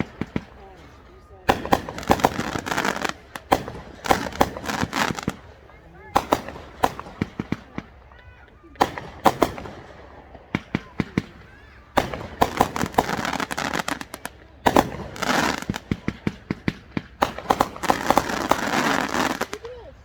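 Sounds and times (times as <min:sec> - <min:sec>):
firework bangs: 0:00.0 - 0:20.0
firework crackling: 0:00.0 - 0:20.0.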